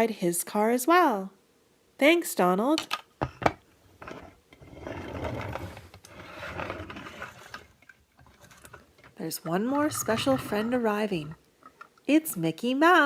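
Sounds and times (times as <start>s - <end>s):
toy car wheels rumbling: 4.6s - 11.8s.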